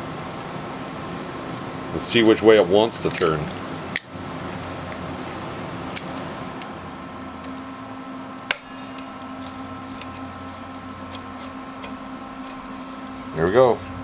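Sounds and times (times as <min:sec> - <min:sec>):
steady hum: 0:00.0 - 0:14.0
wrench metallic clicks: 0:03.0 - 0:04.1.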